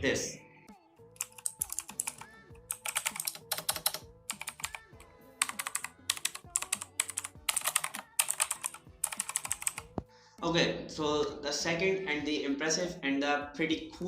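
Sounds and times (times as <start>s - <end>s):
soft background music: 0.0s - 14.0s
mechanical keyboard typing: 1.2s - 9.9s.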